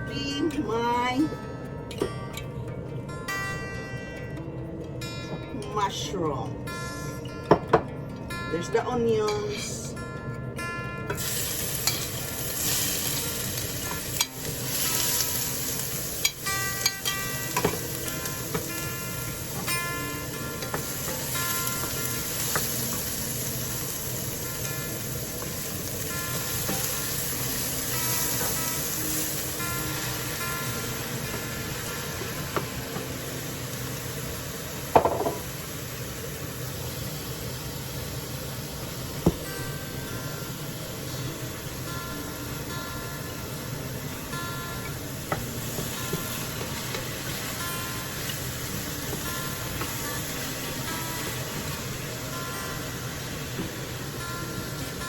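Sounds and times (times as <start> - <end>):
cooking utensil striking a pan: 11.1 - 23.3, 34.9 - 35.6
vegetables sizzling in a pan: 11.1 - 55.0
steady hiss: 11.2 - 55.0
utensil knocking against pan: 35.0 - 35.4.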